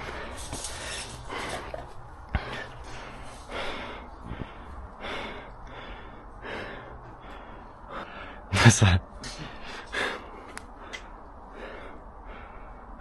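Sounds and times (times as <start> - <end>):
person breathing heavily: 0.0 - 8.6, 9.2 - 13.0.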